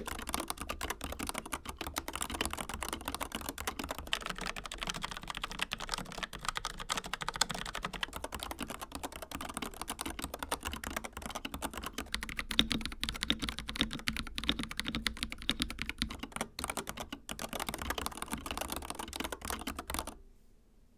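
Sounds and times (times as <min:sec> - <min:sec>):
fast typing on mechanical keyboard: 0:00.0 - 0:20.2.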